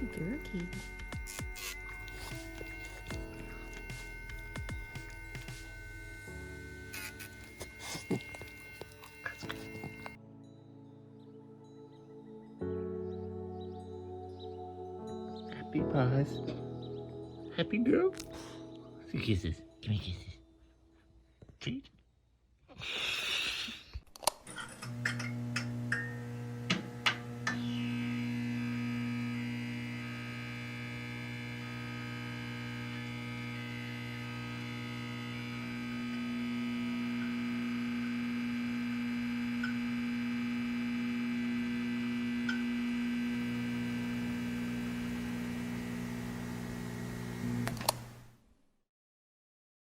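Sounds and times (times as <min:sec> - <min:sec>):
nail grinder humming: 0:00.0 - 0:10.2, 0:24.4 - 0:48.4.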